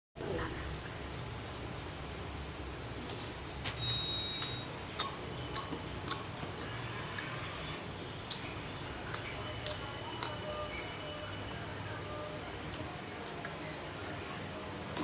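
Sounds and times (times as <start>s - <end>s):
high-pitched chirping: 0.6s - 6.2s.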